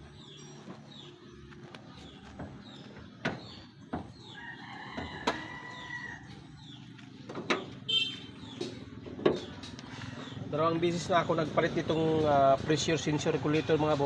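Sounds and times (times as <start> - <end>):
small birds chirping: 0.0 - 14.0
rooster crowing: 4.3 - 6.3.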